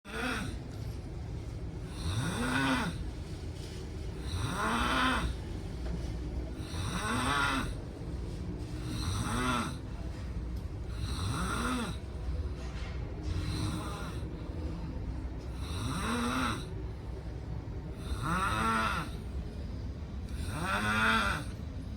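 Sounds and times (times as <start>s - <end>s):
loud snoring: 0.1s - 0.7s, 1.8s - 3.1s, 4.1s - 5.4s, 6.5s - 7.8s, 8.8s - 10.0s, 10.8s - 12.2s, 13.2s - 14.4s, 15.4s - 16.8s, 17.9s - 19.3s, 20.2s - 21.6s
steady low hum: 0.1s - 21.9s.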